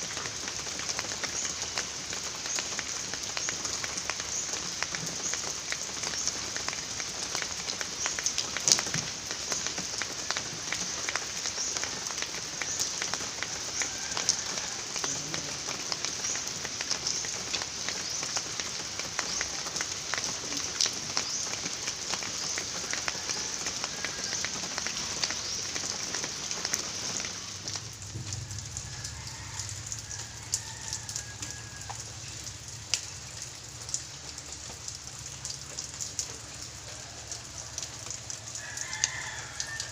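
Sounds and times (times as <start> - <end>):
steady rain falling: 0.0 - 39.9
low hum: 27.8 - 30.4.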